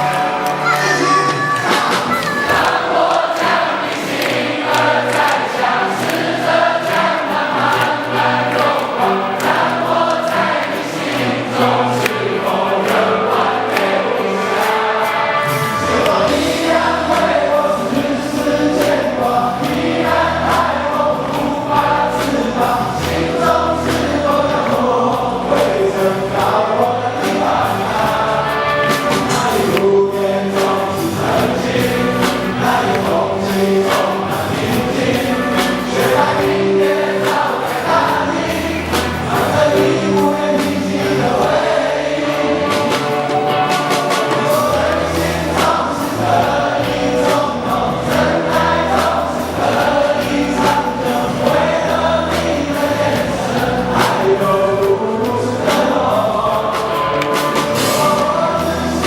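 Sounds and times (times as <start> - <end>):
rock band playing: 0.0 - 3.6, 11.6 - 59.0
person singing: 0.0 - 3.8, 15.6 - 59.0
bass guitar: 15.1 - 59.0.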